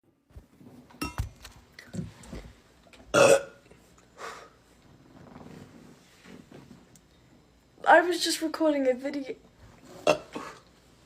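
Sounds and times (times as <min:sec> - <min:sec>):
woman burping loudly: 0:03.1 - 0:03.6, 0:10.0 - 0:10.6.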